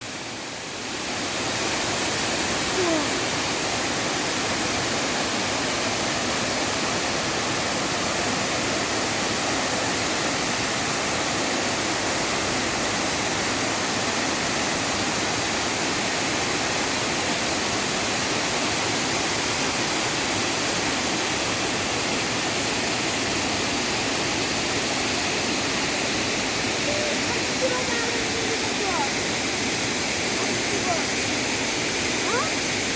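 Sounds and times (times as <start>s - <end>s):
rushing water: 0.0s - 32.9s.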